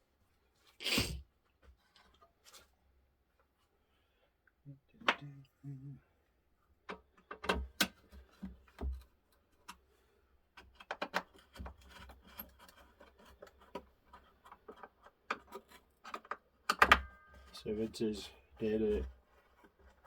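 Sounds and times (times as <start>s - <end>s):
clicks and taps handling clock: 6.8s - 9.8s, 10.6s - 17.6s.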